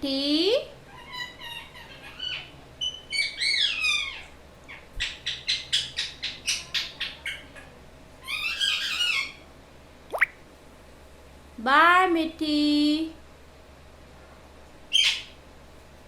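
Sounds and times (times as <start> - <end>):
parrot squawking and chirping: 0.9 - 9.4, 14.9 - 15.4.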